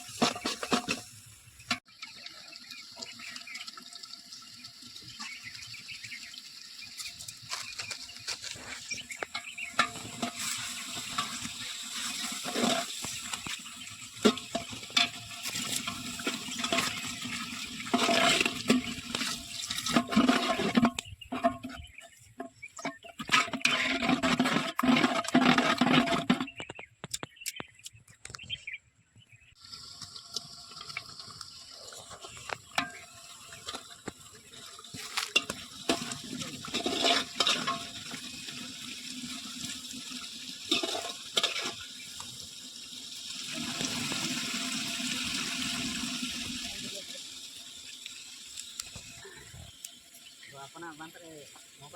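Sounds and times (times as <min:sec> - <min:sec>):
water sloshing and splashing: 0:07.0 - 0:26.5, 0:29.9 - 0:41.9.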